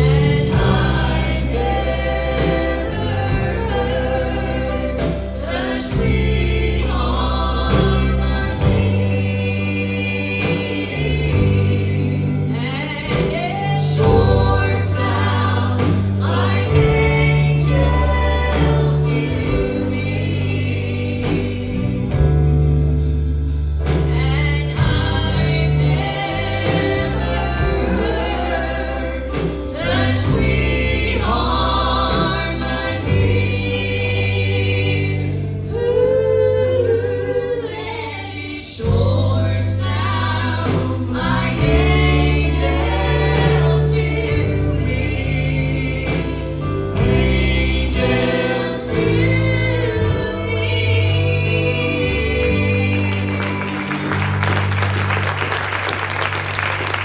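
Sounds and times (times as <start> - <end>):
strong bass line: 0.0 - 36.4
choir singing gospel: 0.0 - 57.0.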